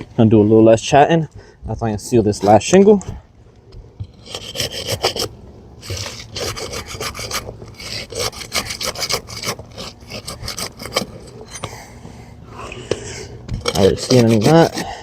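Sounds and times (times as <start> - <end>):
flat bar scraping under shingle: 0.0 - 15.0.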